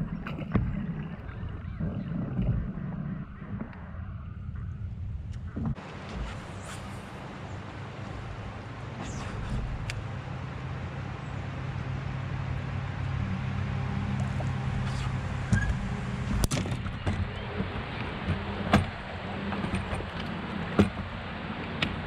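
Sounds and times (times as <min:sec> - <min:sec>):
motor humming: 0:05.5 - 0:22.0.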